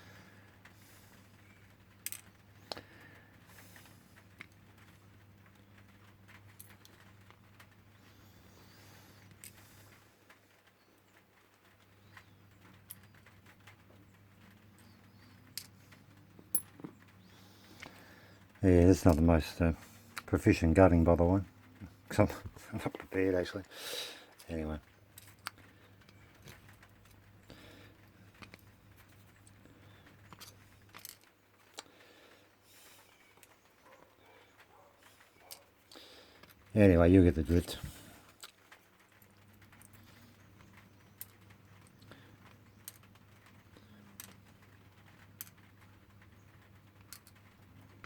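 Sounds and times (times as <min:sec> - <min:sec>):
padlock parts clicking: 0:25.1 - 0:31.9, 0:38.3 - 0:48.0.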